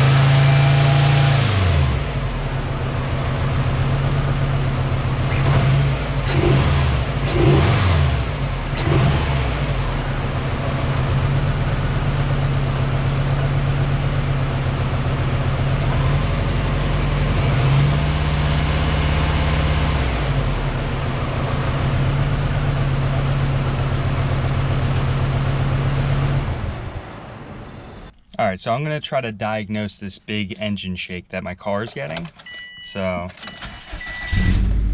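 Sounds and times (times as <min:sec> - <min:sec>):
car engine idling and revving: 0:00.0 - 0:28.2, 0:31.9 - 0:34.9.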